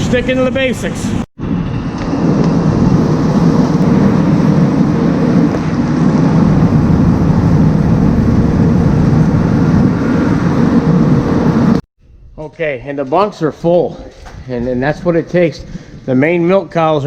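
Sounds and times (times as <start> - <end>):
mechanical feeder drone: 1.4 - 11.8.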